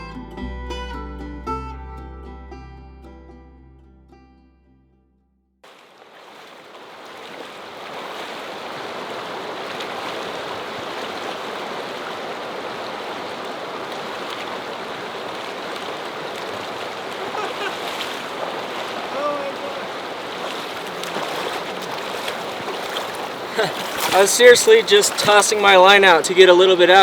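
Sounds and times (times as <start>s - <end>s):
river water rushing: 5.7s - 27.0s.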